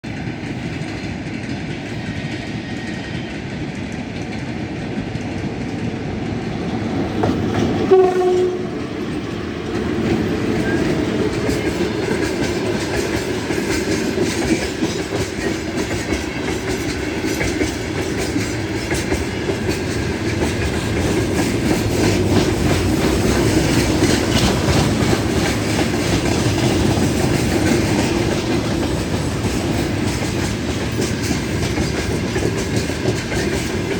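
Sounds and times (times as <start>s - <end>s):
freight train rumbling past: 0.0s - 33.9s
train horn blast: 7.8s - 8.9s.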